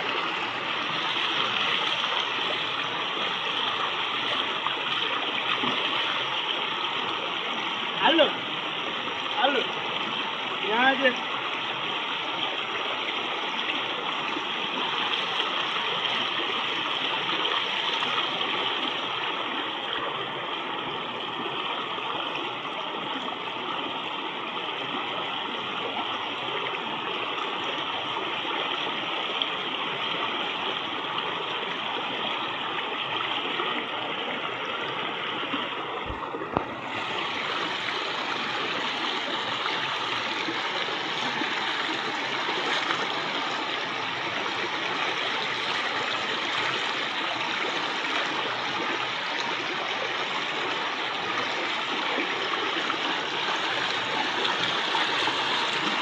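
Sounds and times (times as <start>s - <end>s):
river water flowing and gurgling: 0.0s - 56.0s.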